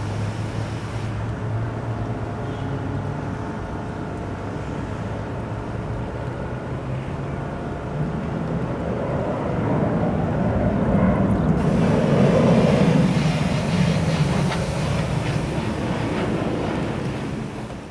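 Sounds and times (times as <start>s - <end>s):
jet engine hiss: 0.0s - 1.4s, 11.2s - 17.9s
jet engine rumble: 5.2s - 17.9s.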